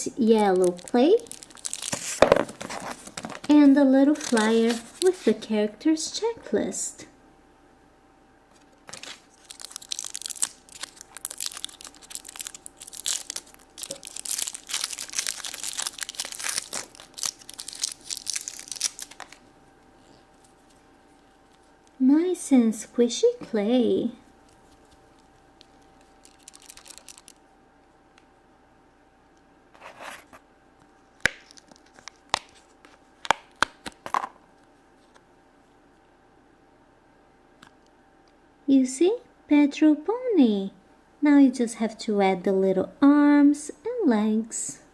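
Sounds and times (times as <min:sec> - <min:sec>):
plastic wrapper crinkling: 0:00.0 - 0:05.5, 0:08.6 - 0:19.5, 0:24.2 - 0:27.4, 0:31.2 - 0:34.2
soft rustle: 0:24.2 - 0:26.3.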